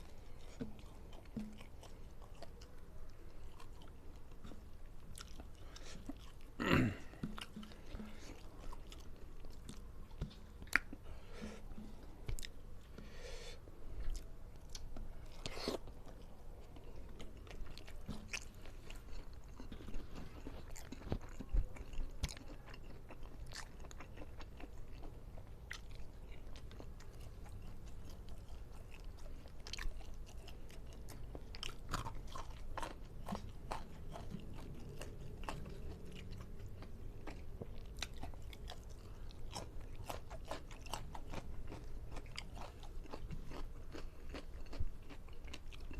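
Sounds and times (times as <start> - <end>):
person chewing food: 0.0 - 45.9.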